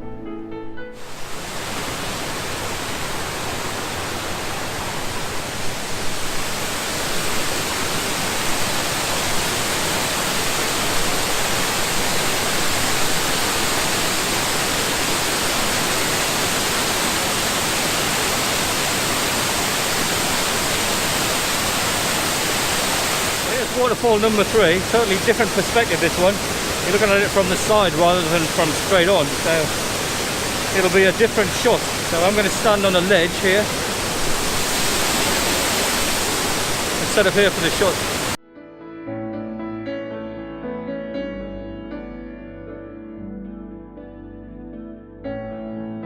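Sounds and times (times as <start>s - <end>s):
music: 0.0s - 1.0s, 38.4s - 46.0s
waterfall roaring: 1.0s - 38.4s.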